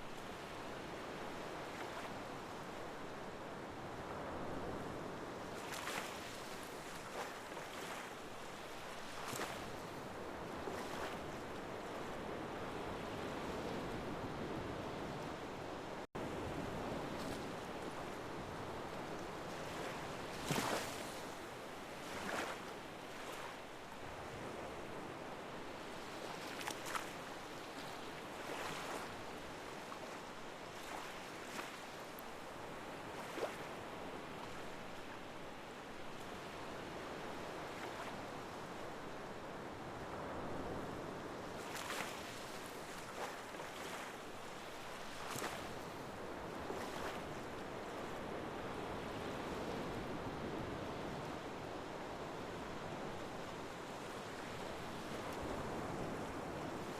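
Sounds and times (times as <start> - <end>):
small waves washing: 4.2 - 12.2, 16.3 - 25.1, 25.7 - 35.3, 40.0 - 51.3.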